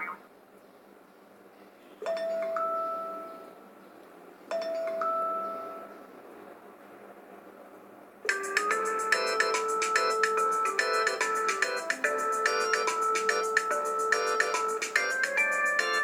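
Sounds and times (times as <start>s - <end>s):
two-note phone alert chime: 2.1s - 3.5s.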